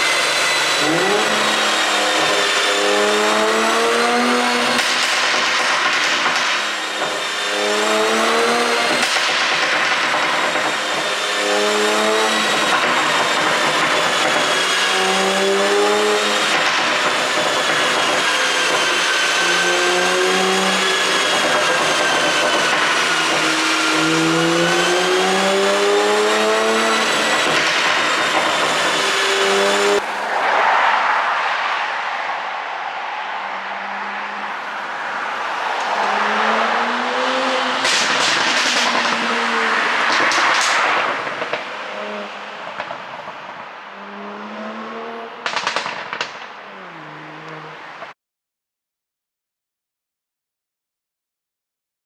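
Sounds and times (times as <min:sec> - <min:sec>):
car engine revving through gears: 0:00.0 - 0:31.8, 0:33.3 - 0:48.2
short rush of noise: 0:30.0 - 0:36.0.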